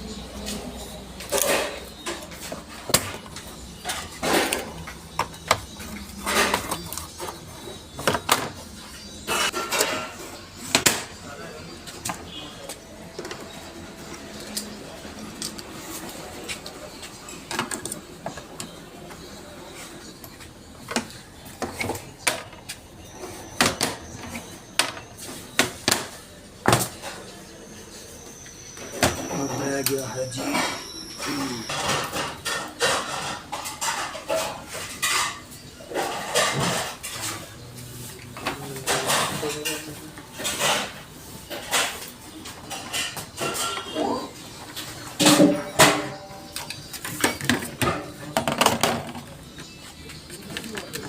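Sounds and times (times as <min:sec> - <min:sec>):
hard objects knocking and clacking: 0:45.2 - 0:49.7.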